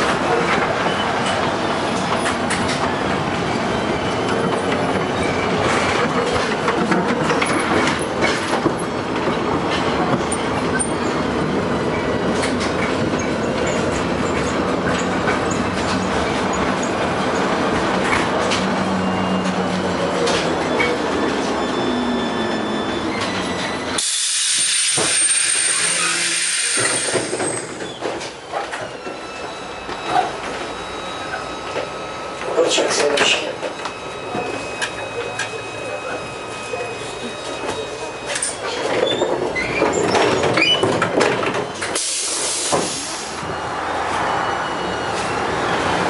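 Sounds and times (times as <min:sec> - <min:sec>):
tram rolling on rails: 0:00.0 - 0:46.0
high squeals: 0:19.0 - 0:28.0
air hiss with high whistle: 0:24.0 - 0:27.4.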